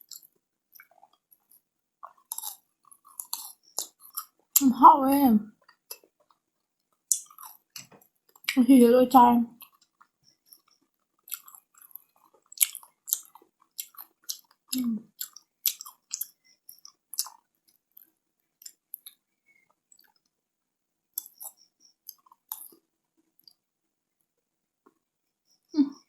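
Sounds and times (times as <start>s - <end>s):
chewing crunchy sweets: 0.0s - 8.6s, 9.5s - 20.4s, 21.1s - 23.6s
wet mouth clicks: 12.6s - 17.4s, 21.2s - 22.8s.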